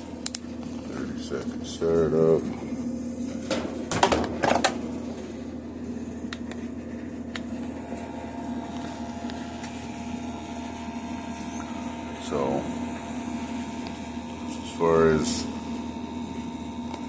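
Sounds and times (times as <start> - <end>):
faint higher hum: 0.0 - 17.0
sampling pump hum: 0.0 - 17.0.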